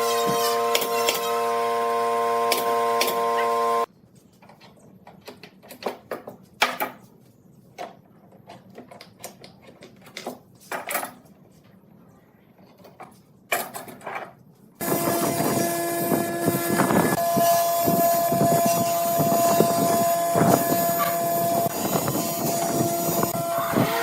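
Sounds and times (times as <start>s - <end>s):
loud noisy sound: 14.8s - 24.0s.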